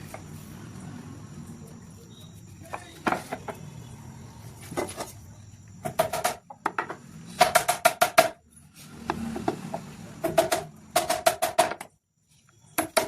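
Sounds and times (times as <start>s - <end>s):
sharp wooden knocks: 5.8s - 8.4s, 10.2s - 11.9s.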